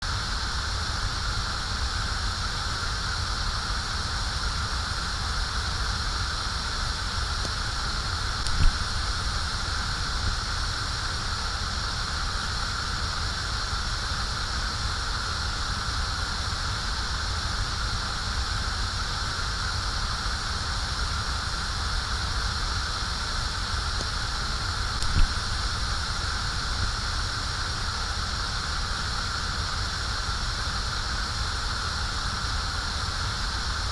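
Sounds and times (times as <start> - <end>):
gas flame hissing: 0.1 - 33.9
brief pops: 8.4 - 9.1, 25.0 - 25.7.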